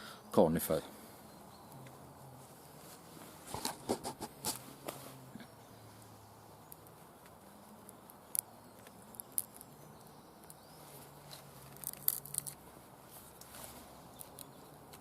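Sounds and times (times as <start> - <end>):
wooden stick cracking: 6.7 - 10.6, 11.2 - 12.6.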